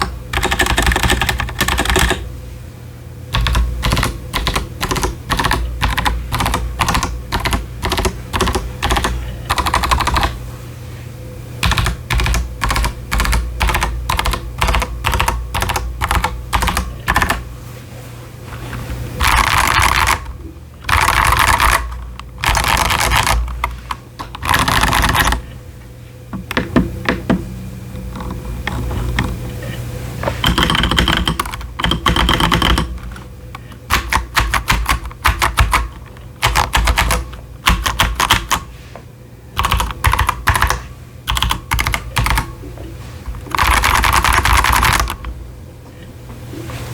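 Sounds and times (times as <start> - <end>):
mechanical keyboard typing: 0.0 - 2.3, 3.3 - 10.4, 11.6 - 17.4, 19.2 - 25.5, 30.3 - 38.7, 39.6 - 42.5, 43.3 - 45.3.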